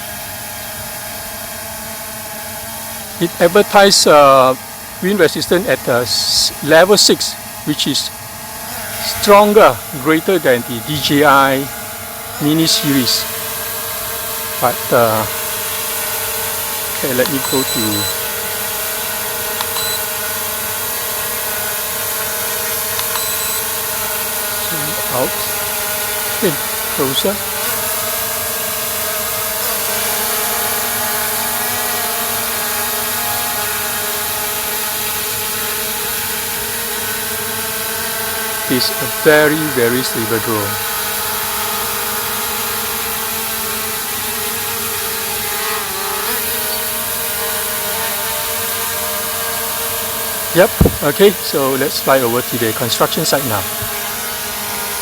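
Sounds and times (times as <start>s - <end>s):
drone propellers whining: 16.4s - 27.4s
short high beeps: 17.1s - 18.2s, 19.6s - 20.1s, 23.0s - 23.7s.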